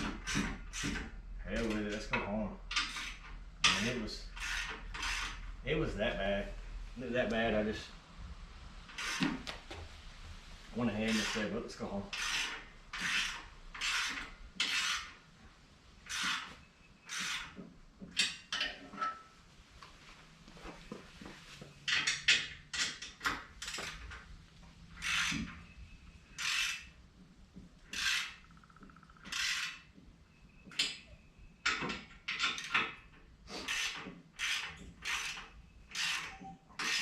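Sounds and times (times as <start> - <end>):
rasping scrapes: 2.7 - 5.5, 8.9 - 9.4, 10.8 - 15.2, 16.0 - 17.7, 25.0 - 25.7, 26.3 - 27.0, 27.8 - 28.5, 29.2 - 29.9, 33.5 - 37.0.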